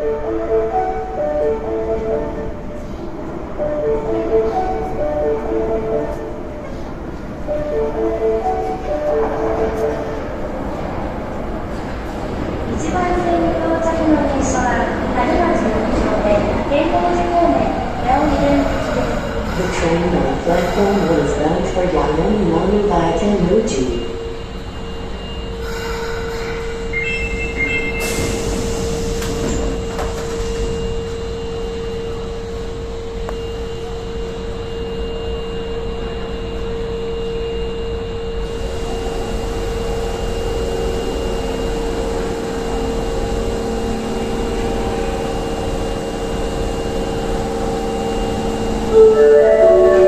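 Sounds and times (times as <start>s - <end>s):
train electrical hum: 0.0s - 50.0s
platform melody: 48.9s - 50.0s.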